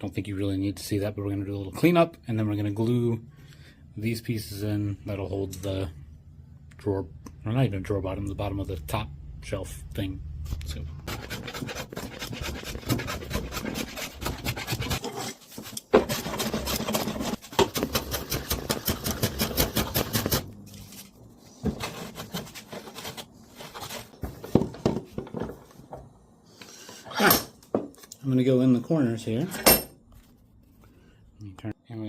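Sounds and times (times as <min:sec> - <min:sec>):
hand tool rubbing on wood: 0:11.1 - 0:20.4.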